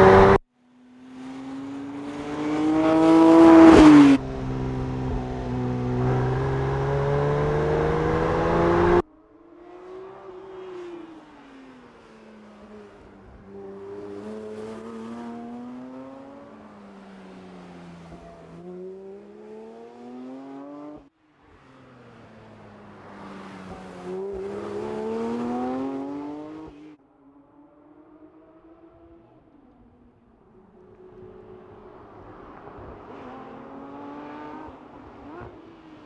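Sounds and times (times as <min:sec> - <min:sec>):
car engine revving while driving: 0:00.0 - 0:00.4, 0:01.4 - 0:09.0, 0:23.9 - 0:26.8, 0:31.2 - 0:35.8.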